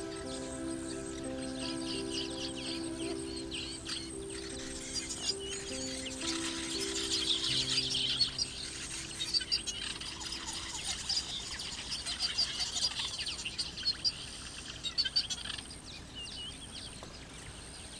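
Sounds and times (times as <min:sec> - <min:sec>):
birds chirping and twittering: 0:00.0 - 0:17.9.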